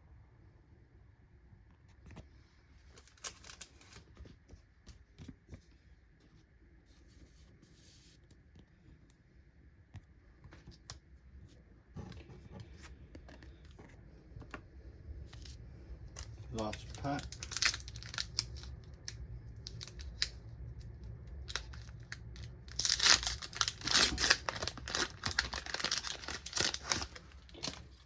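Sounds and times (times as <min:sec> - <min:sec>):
card rustle: 0:02.9 - 0:05.8, 0:21.5 - 0:28.0.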